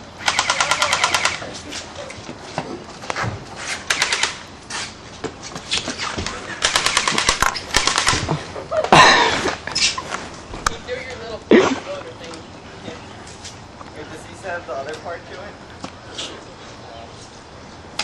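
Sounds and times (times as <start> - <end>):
airsoft gun rapid firing: 0.2 - 1.4, 3.9 - 4.4, 6.6 - 8.3.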